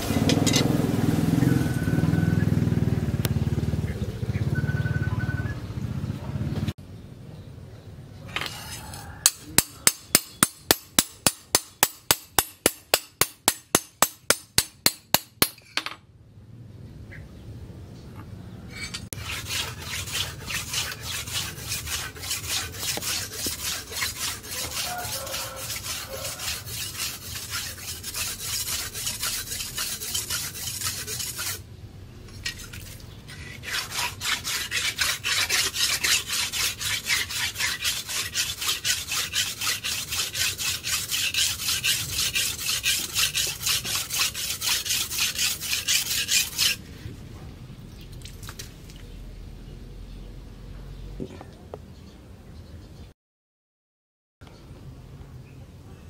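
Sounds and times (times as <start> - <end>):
machete blade being sharpened: 18.7 - 31.6, 32.4 - 46.8.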